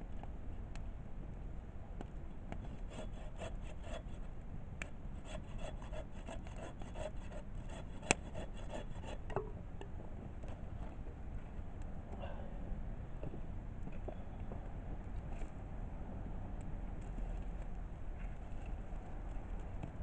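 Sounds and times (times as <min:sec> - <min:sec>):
rasping strokes on wood: 0:02.6 - 0:09.5.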